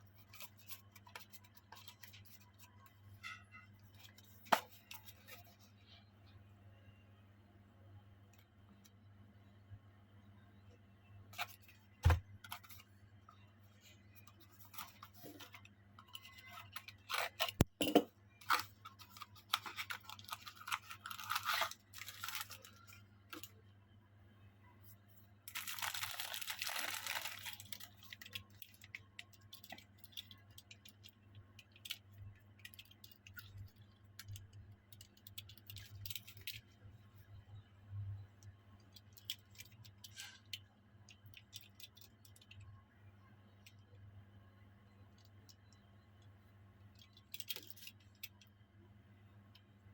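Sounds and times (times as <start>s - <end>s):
packaging tearing and rustling: 18.4s - 22.9s, 25.5s - 28.4s
packaging crinkling: 18.4s - 23.5s, 25.5s - 30.8s.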